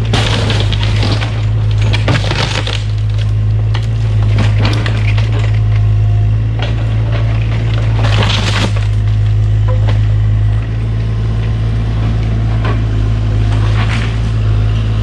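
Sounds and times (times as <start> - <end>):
timber cracking and splintering: 0.0 - 10.0
diesel engine running under load: 0.0 - 15.0.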